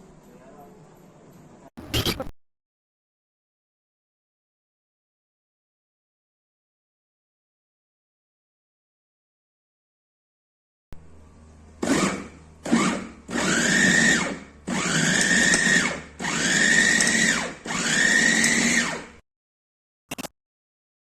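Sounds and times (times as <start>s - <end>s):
food processor motor whining: 11.8s - 19.2s.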